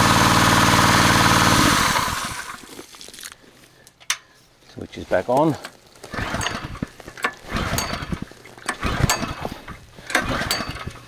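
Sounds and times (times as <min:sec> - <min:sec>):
engine turning over: 0:00.0 - 0:02.7, 0:06.0 - 0:11.0
recoil starter pulls: 0:00.0 - 0:02.8, 0:06.0 - 0:11.0.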